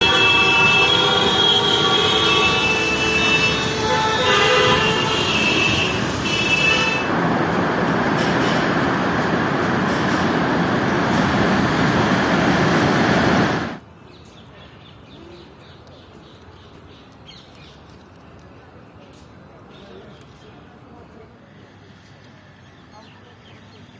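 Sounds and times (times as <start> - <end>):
vehicle horns honking: 0.0 - 7.2
road traffic rushing: 0.0 - 15.6
faint outdoor background: 13.6 - 23.9.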